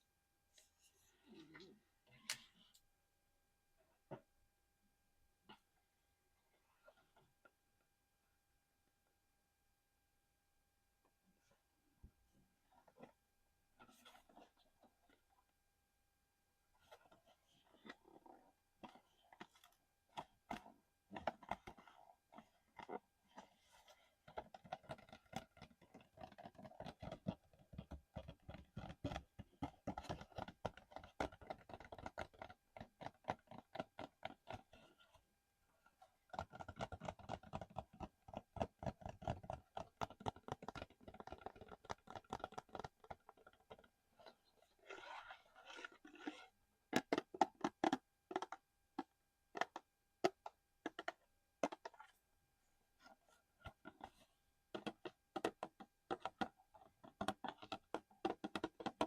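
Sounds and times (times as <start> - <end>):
fingers tapping hard object: 47.0 - 52.0, 54.7 - 59.0.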